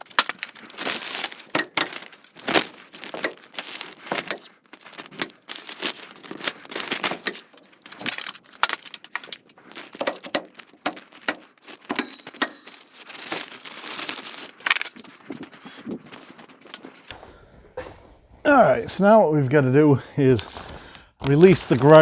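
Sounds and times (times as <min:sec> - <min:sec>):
plastic sheeting crinkling: 0:00.0 - 0:17.1.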